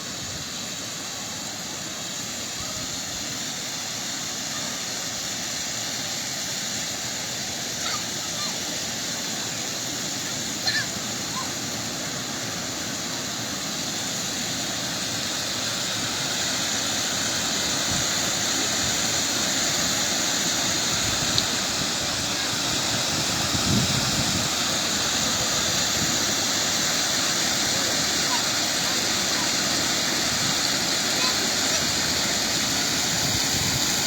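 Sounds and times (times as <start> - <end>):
heavy rain hissing: 0.0 - 34.0
wind buffeting: 20.9 - 26.3.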